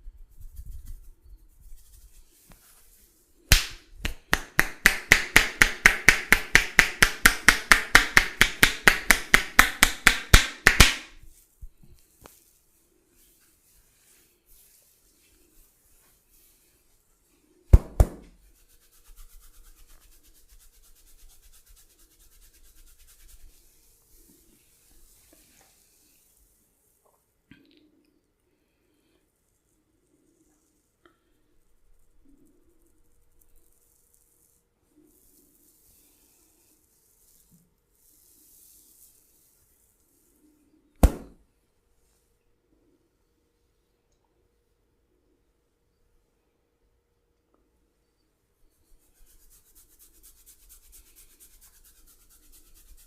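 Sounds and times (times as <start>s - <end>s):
massage rubbing strokes: 0.0s - 27.0s, 29.2s - 41.4s, 48.6s - 53.0s
hands smacking on body: 3.5s - 11.1s, 41.0s - 41.4s
sharp slap or crack: 3.5s - 11.2s, 41.0s - 41.4s.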